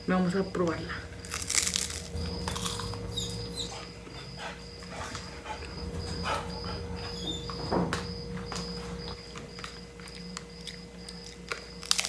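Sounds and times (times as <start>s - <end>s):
dog whining: 0.7s - 9.2s
rice cake crunching: 1.2s - 3.1s.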